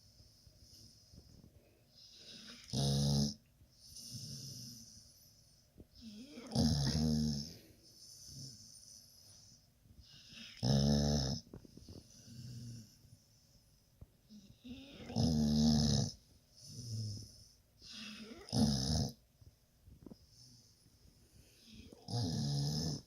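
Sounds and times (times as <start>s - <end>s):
soft breath sound: 7.4s - 10.6s, 19.4s - 22.1s
person snoring: 21.9s - 23.0s.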